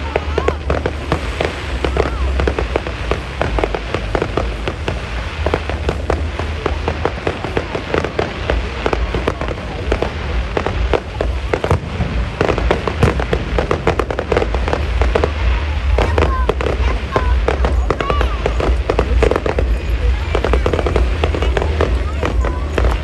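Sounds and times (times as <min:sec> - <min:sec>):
fireworks crackling pops: 0:00.0 - 0:23.0
steady low rumble: 0:00.0 - 0:23.0.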